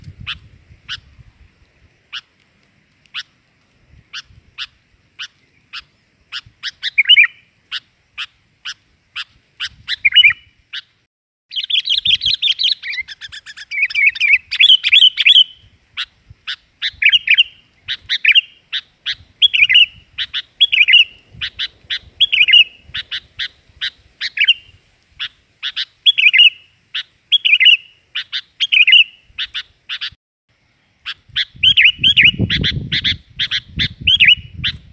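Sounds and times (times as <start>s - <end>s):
bird chip notes and chattering: 11.5s - 30.2s, 31.0s - 34.9s.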